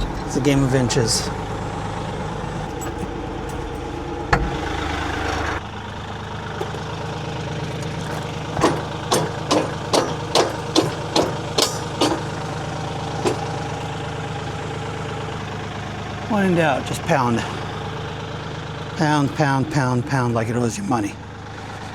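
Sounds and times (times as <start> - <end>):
tractor diesel engine idling: 0.0 - 21.9
hammer blows: 7.9 - 14.0.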